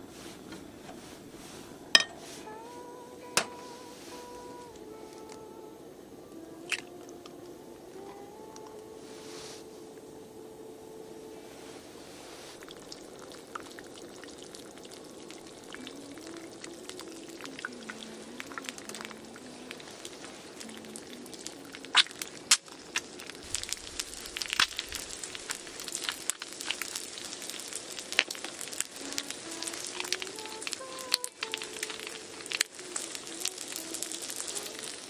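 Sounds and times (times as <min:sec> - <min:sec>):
sizzling with pops and crackles: 0:03.2 - 0:09.2, 0:12.4 - 0:35.0.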